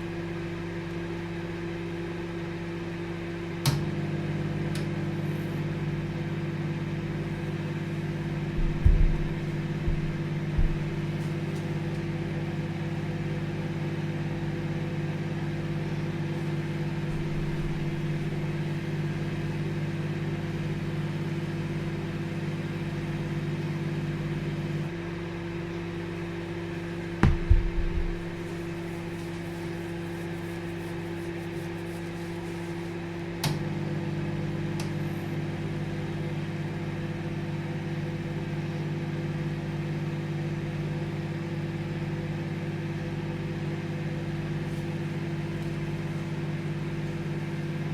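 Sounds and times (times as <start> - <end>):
microwave oven humming: 0.0 - 47.9
microwave click: 3.6 - 4.0
loud knock: 8.6 - 11.3, 27.2 - 28.8.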